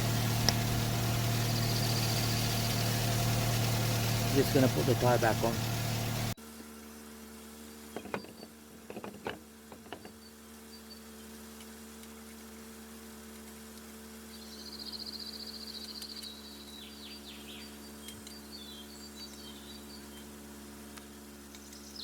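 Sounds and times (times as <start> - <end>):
low hum: 0.0 - 6.4.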